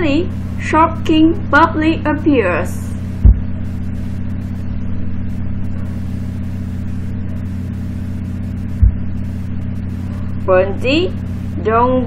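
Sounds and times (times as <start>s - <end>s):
low machine hum: 0.0s - 12.0s
low thump: 3.2s - 3.7s, 8.7s - 9.3s.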